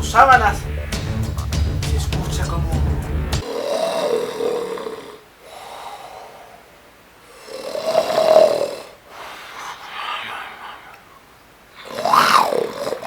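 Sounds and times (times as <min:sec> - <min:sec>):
person snoring heavily: 0:03.4 - 0:06.6, 0:07.3 - 0:13.0.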